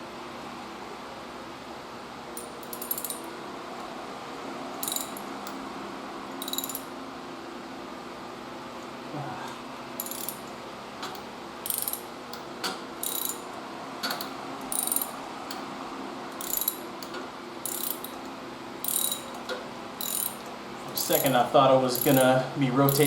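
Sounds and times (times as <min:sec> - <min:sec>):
ratchet wrench clicking: 0:02.4 - 0:03.3, 0:04.8 - 0:05.3, 0:06.4 - 0:06.9, 0:10.0 - 0:10.5, 0:11.6 - 0:12.1, 0:13.0 - 0:13.4, 0:14.1 - 0:15.2, 0:16.4 - 0:16.8, 0:17.7 - 0:18.2, 0:18.8 - 0:19.4, 0:20.0 - 0:20.4, 0:21.0 - 0:21.4, 0:22.0 - 0:22.3.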